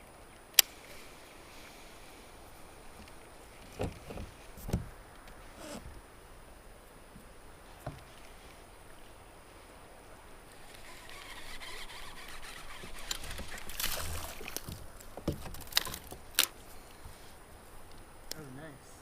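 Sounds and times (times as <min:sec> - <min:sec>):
river water hissing: 0:00.5 - 0:15.2.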